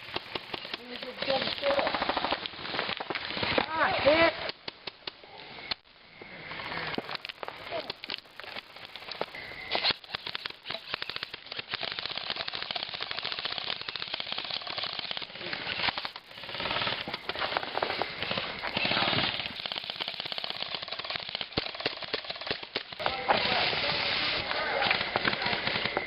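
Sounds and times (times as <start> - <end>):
airsoft guns firing rapid bursts: 0.0 - 2.5, 8.4 - 26.0.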